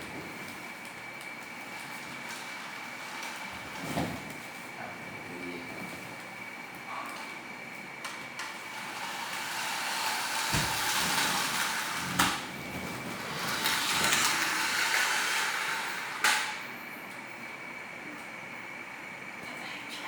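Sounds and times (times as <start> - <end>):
toy car electric motor whirring: 8.7 - 12.5, 13.2 - 16.6.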